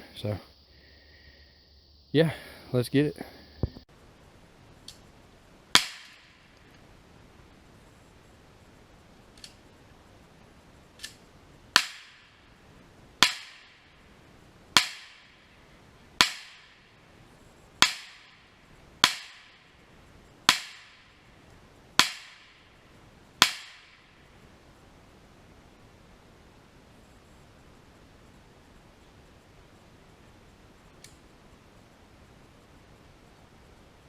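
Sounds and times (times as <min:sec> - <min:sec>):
faint pops: 0:03.2 - 0:03.8.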